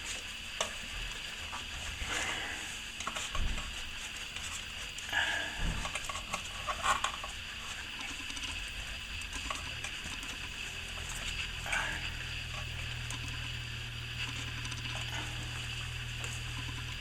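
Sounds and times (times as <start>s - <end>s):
scratching and tapping handling noises: 0.0s - 11.7s.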